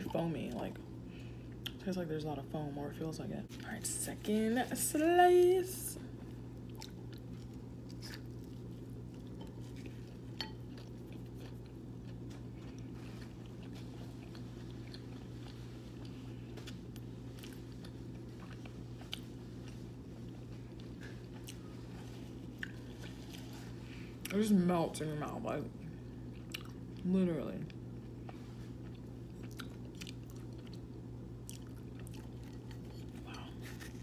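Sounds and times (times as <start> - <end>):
steady low hum: 0.0 - 34.0
person chewing pizza: 6.1 - 24.4, 26.0 - 27.1, 27.7 - 34.0.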